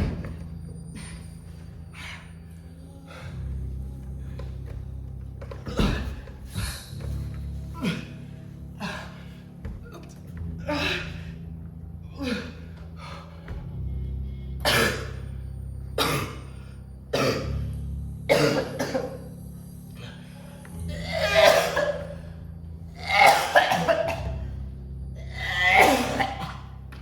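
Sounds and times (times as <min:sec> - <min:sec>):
low droning background music: 0:00.0 - 0:27.0
person coughing harshly: 0:14.6 - 0:15.2, 0:16.0 - 0:16.5, 0:17.1 - 0:17.6, 0:18.3 - 0:19.3, 0:20.9 - 0:22.2, 0:23.0 - 0:24.5, 0:25.5 - 0:26.8.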